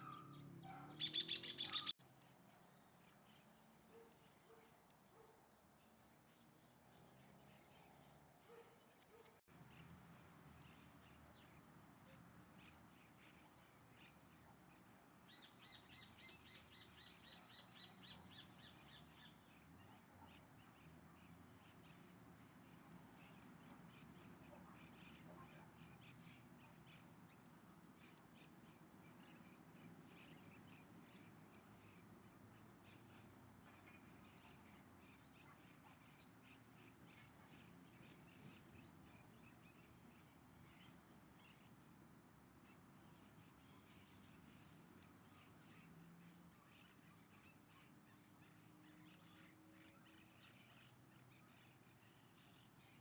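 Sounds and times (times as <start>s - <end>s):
birds chirping: 0.0s - 2.0s
chorus of birds chirping: 0.0s - 4.7s, 6.0s - 53.0s.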